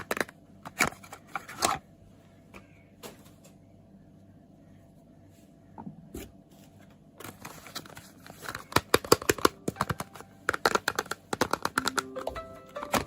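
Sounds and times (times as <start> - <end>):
packaging crinkling: 7.2 - 12.0.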